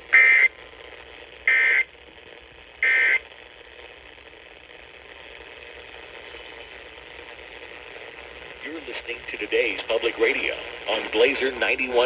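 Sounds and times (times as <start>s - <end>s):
buzzing two-tone data bursts: 0.1s - 0.5s, 1.4s - 1.9s, 2.8s - 3.2s.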